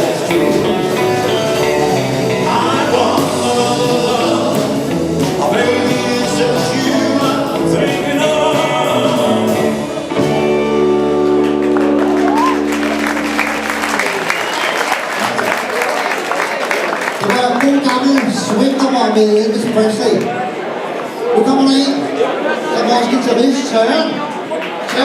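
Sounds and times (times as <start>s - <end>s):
person singing: 0.0s - 10.8s
live rock and roll band: 0.0s - 16.3s.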